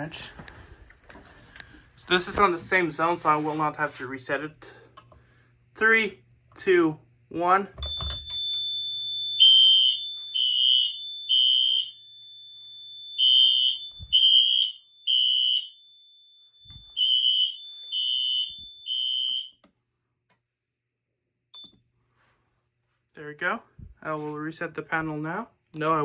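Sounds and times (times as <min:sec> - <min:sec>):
fire alarm high beeps: 0:07.8 - 0:19.6, 0:21.6 - 0:21.8.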